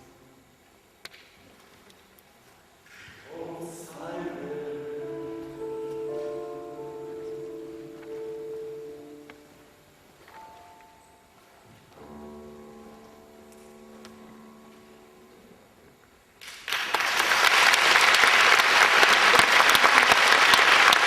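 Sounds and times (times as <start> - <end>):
song's held last chord: 4.4 - 11.0
audience applause: 16.4 - 21.0.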